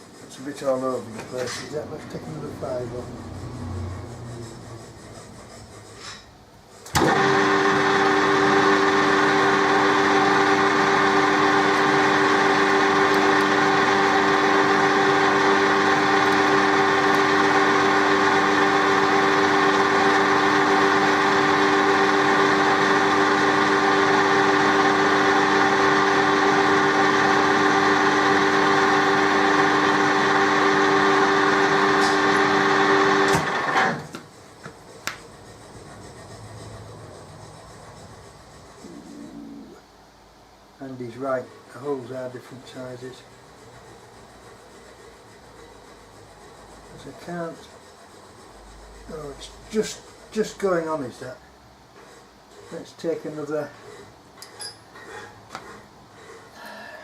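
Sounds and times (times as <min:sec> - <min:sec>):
metal lathe with gear whine: 0:06.9 - 0:34.0.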